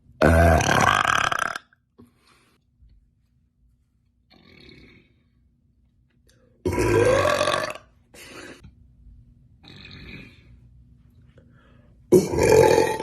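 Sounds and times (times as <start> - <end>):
woman burping: 6.6 - 7.8, 12.1 - 13.0.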